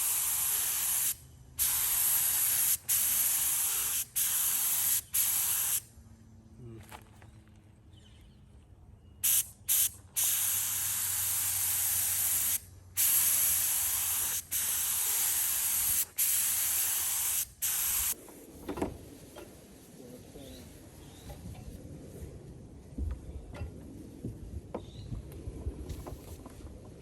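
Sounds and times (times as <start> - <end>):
paint spray gun hissing: 0.0 - 5.9, 9.2 - 18.2.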